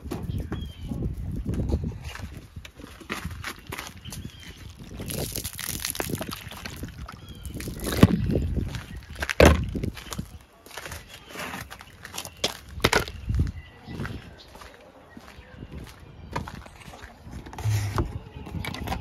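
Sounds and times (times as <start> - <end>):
footsteps: 17.4 - 18.2.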